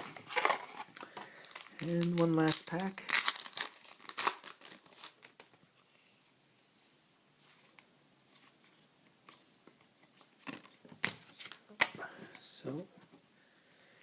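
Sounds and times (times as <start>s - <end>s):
foil wrapper crinkling: 0.2s - 5.6s
cards being handled: 7.4s - 12.0s.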